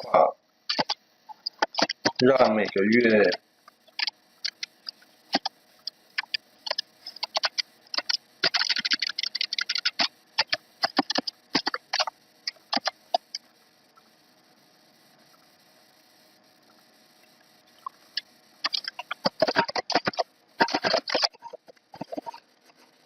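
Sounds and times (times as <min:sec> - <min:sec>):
typing on computer keyboard: 0:06.2 - 0:12.1.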